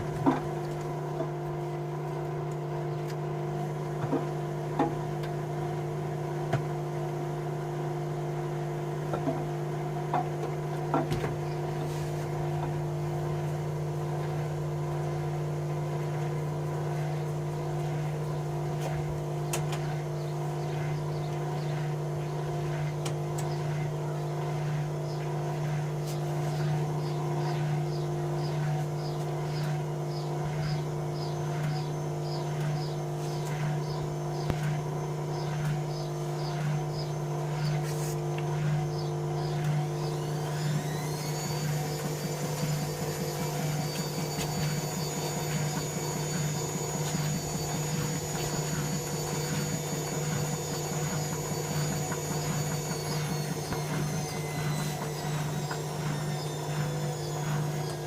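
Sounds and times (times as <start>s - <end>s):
washing machine motor humming: 0.0s - 58.0s.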